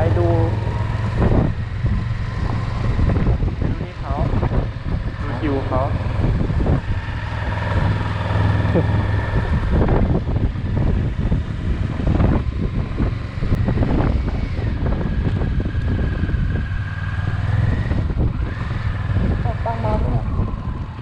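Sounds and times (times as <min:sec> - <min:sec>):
engine humming with high whine: 0:00.0 - 0:21.0.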